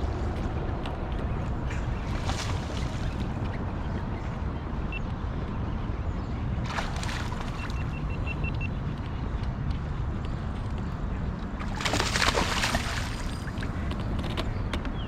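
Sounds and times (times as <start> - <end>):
water sloshing around a kayak: 11.6 - 13.8.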